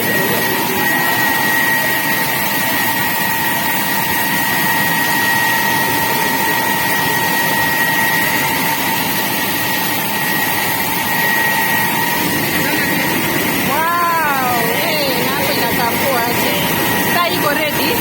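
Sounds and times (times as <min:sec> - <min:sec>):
milling machinery whining: 0:00.0 - 0:18.0.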